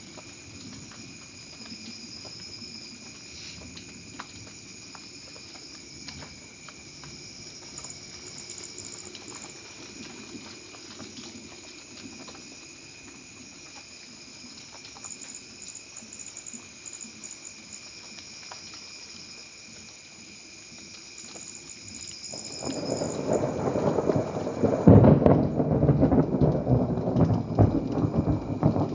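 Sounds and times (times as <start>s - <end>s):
water drips ticking: 0.0s - 24.7s
insects chirping: 0.0s - 28.9s
light rain pattering: 0.0s - 28.9s
loud thunderclap: 22.3s - 28.9s.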